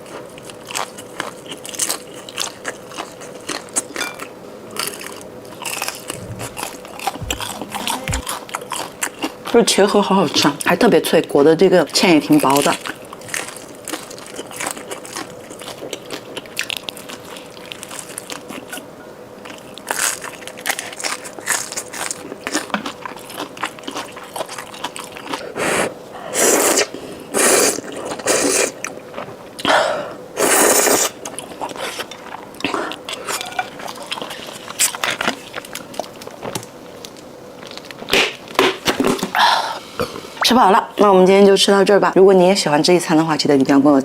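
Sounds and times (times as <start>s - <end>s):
crunching bites and chewing: 0.0s - 9.5s.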